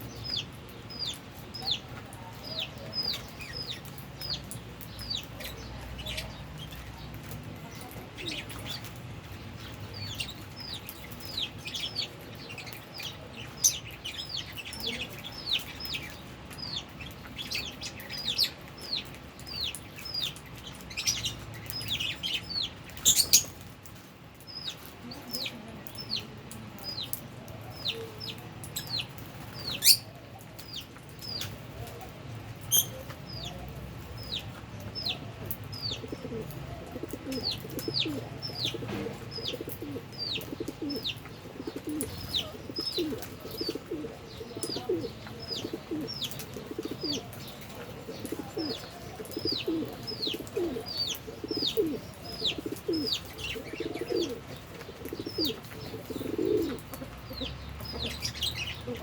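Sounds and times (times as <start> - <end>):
lovebirds chirping: 0.0 - 59.0.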